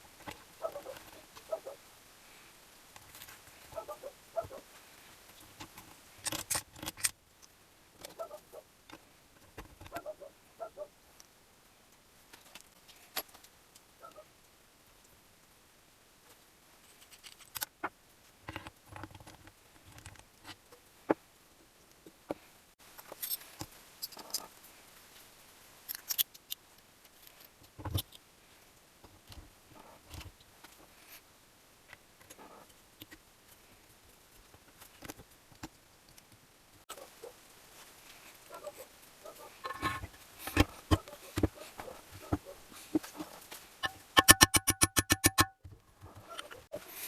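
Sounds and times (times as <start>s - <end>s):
metal tools clicking and clinking: 23.0s - 24.5s, 25.9s - 26.6s, 43.8s - 45.6s.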